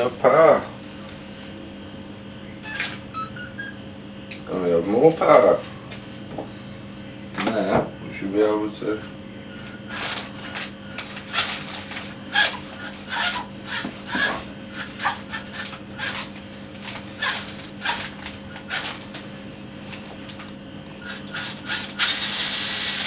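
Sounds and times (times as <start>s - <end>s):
rc car motor whirring: 8.9s - 19.1s, 21.0s - 23.0s.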